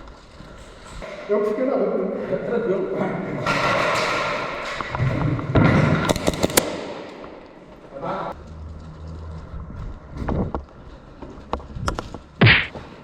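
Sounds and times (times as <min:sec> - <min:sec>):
airsoft gun shots: 0:05.9 - 0:07.4, 0:12.4 - 0:12.7.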